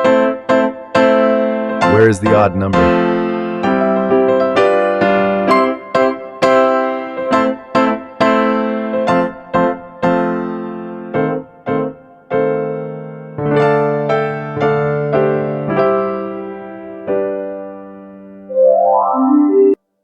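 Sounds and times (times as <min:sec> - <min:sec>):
light keyboard tune: 0:01.2 - 0:08.0, 0:18.4 - 0:19.8.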